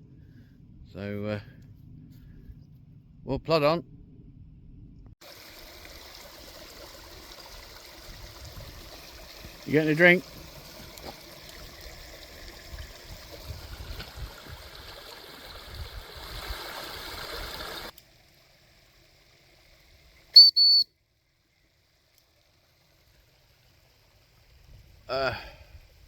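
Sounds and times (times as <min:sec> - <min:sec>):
stream water running: 0:05.2 - 0:26.0
high-pitched whistle blasts: 0:20.4 - 0:20.9.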